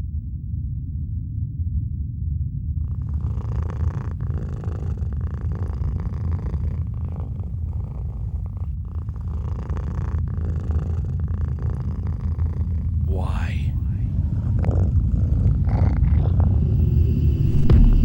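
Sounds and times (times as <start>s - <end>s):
low throbbing rumbling drone: 0.0s - 2.8s, 11.3s - 18.0s
hissing: 2.9s - 18.0s.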